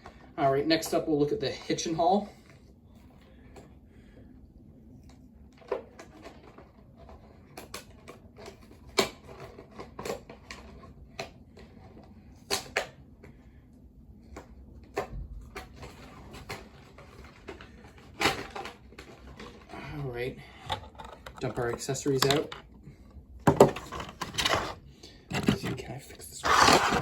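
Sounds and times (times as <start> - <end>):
toy and packaging clicks and taps: 20.7 - 22.6.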